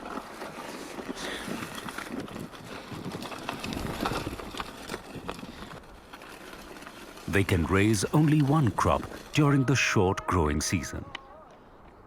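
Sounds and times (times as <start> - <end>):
hooves on stony ground: 0.0 - 9.4.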